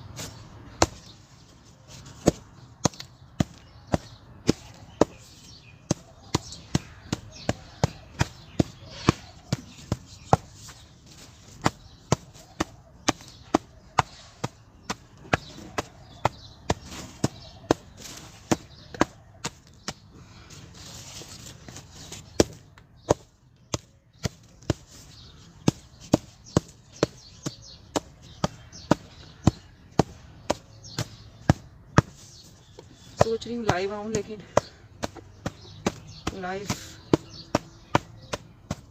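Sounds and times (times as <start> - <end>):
hard cement lumps being struck: 2.1 - 20.0, 22.3 - 38.9.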